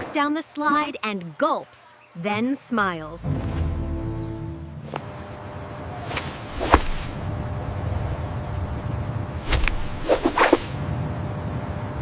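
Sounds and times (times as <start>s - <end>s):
steady low rumble: 6.3s - 11.1s
cartoon whoosh swishes: 9.5s - 10.8s.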